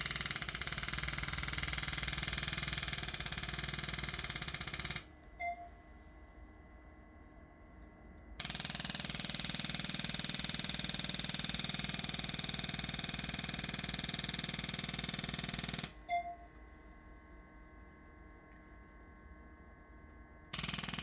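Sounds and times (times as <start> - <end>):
rapid mechanical impulses: 0.0 - 5.1, 8.4 - 15.9, 20.6 - 21.0
short beep: 5.4 - 5.8, 16.1 - 16.5.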